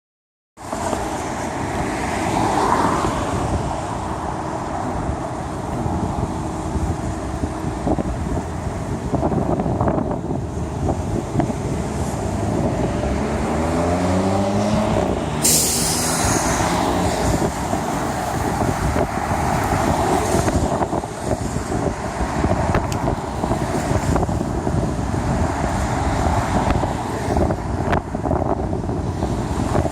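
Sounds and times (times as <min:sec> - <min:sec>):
car engine revving: 0:11.9 - 0:18.4
loud hiss: 0:15.4 - 0:16.8.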